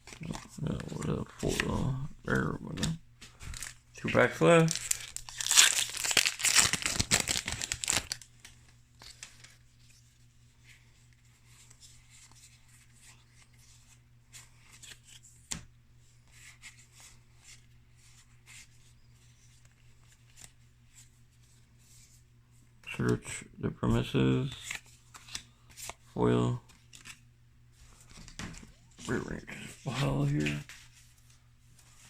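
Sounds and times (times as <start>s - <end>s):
cards being handled: 0.0s - 10.0s, 24.4s - 26.1s, 26.7s - 32.0s
faint low hum: 0.0s - 32.0s
foil wrapper crinkling and tearing: 3.5s - 3.8s, 4.5s - 9.5s.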